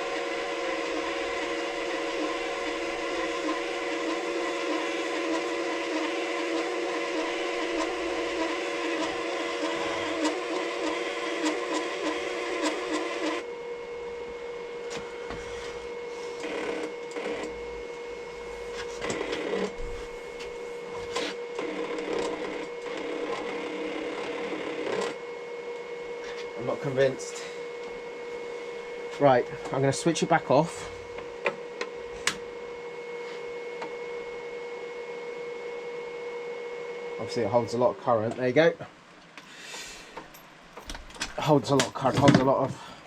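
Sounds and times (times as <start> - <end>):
wire-feed motor whirring: 0.0 - 38.5
faint welder hum: 0.0 - 43.0
knocks and handling sounds: 40.2 - 42.8.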